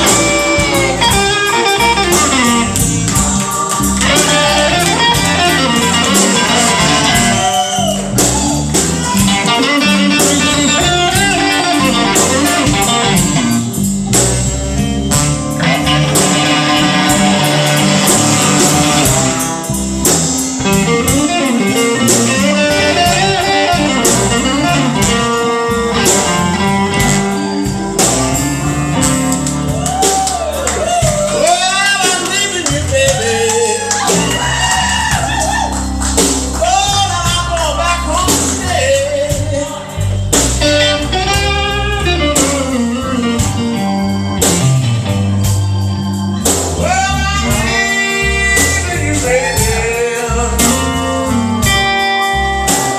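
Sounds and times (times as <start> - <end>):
electric guitar: 0.0 - 52.9
live blues band playing: 0.0 - 52.9
person singing: 31.3 - 34.4, 36.6 - 40.2, 46.8 - 51.9.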